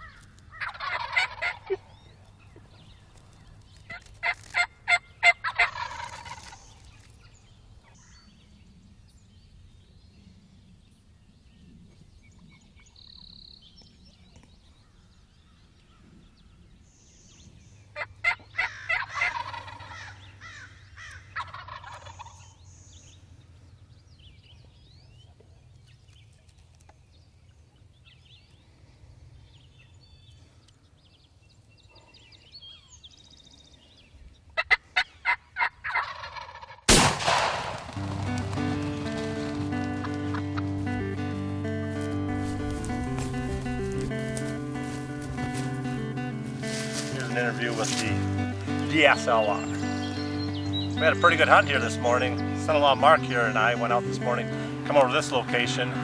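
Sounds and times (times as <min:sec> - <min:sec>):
turkey gobbling: 0:00.6 - 0:01.9, 0:04.9 - 0:06.4, 0:18.2 - 0:20.1, 0:21.4 - 0:22.3, 0:34.6 - 0:36.8, 0:46.6 - 0:56.0
faint songbird calls: 0:44.3 - 0:56.0.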